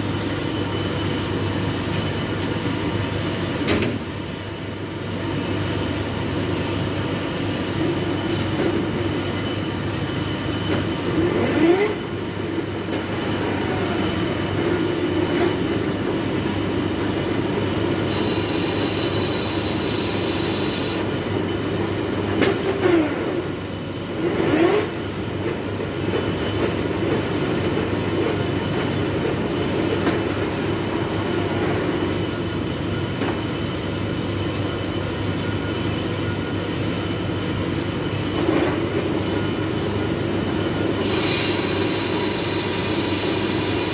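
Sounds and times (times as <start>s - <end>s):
metal lathe running: 18.0s - 21.1s, 40.8s - 43.9s
high thin whine: 18.1s - 21.0s, 41.0s - 43.9s.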